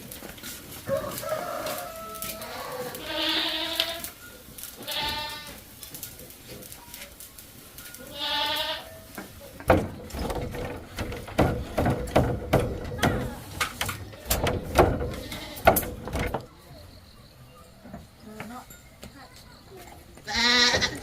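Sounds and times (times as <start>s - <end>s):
farm animal bleating: 2.0s - 4.2s, 4.8s - 5.8s, 8.0s - 9.2s, 15.0s - 15.8s, 20.3s - 21.0s
irregular knocks and thumps: 9.6s - 16.5s.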